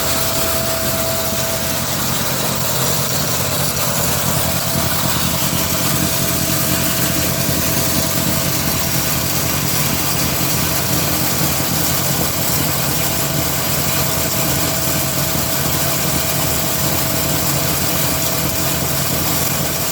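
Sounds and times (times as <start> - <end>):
grinder motor running: 0.0 - 19.9.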